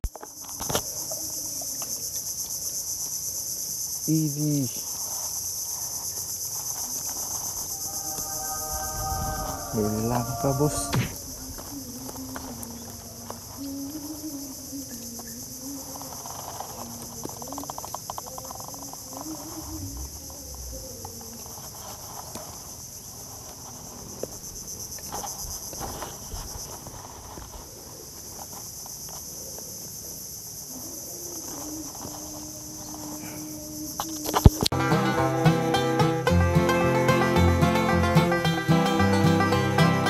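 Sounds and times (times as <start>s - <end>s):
crickets chirring: 0.0s - 40.0s
faint low wavering tone: 7.6s - 11.6s.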